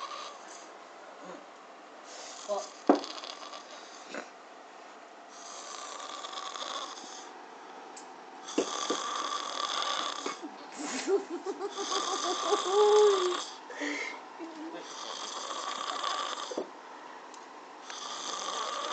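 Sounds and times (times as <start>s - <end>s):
person snoring: 2.2s - 4.3s, 5.4s - 7.3s, 8.5s - 10.4s, 11.6s - 14.2s, 14.8s - 16.7s, 17.8s - 18.9s.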